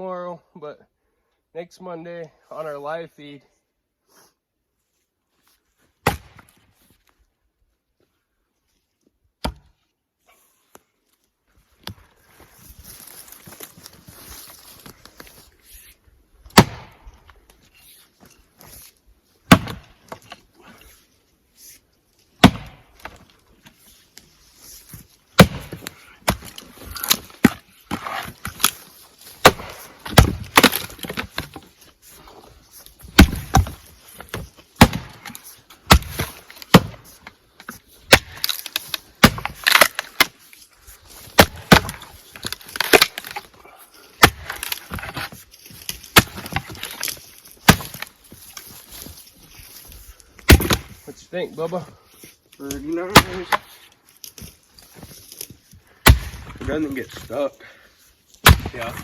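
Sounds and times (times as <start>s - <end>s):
axe splitting firewood: 6.0s - 6.6s, 9.4s - 9.7s, 16.5s - 17.4s, 18.6s - 21.0s, 22.4s - 51.9s, 52.6s - 57.4s, 58.4s - 59.0s
wood cracking apart: 25.4s - 31.8s, 33.1s - 37.2s, 38.1s - 43.6s, 44.2s - 49.3s, 58.4s - 59.0s.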